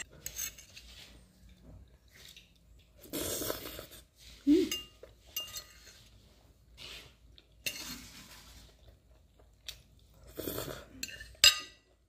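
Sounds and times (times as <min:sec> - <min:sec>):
utensils clinking on a plate: 0:04.7 - 0:06.1, 0:07.6 - 0:08.3, 0:11.0 - 0:12.0.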